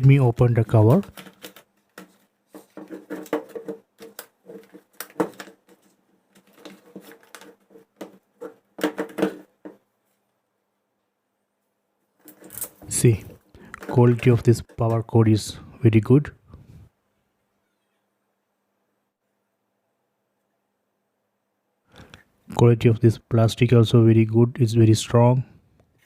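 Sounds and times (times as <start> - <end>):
packaging crinkling and clicking: 0.9 - 9.4.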